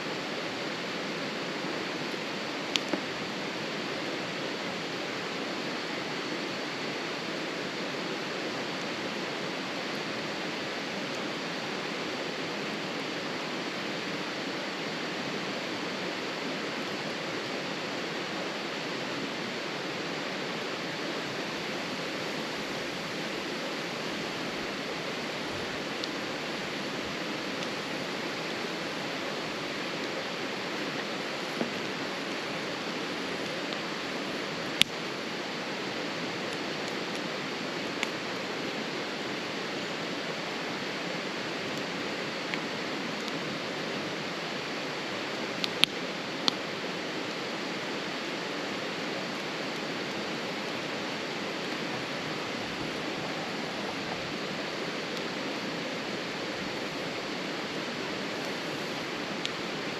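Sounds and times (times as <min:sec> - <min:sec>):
wood fire burning with pops: 0:00.3 - 0:06.6, 0:21.2 - 0:59.9.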